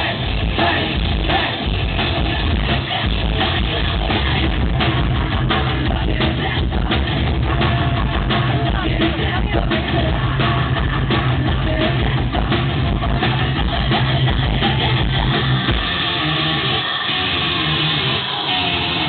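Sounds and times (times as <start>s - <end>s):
distorted electric guitar: 0.0s - 19.0s
drum kit: 0.0s - 19.0s
rock band playing through a pa: 0.0s - 19.0s.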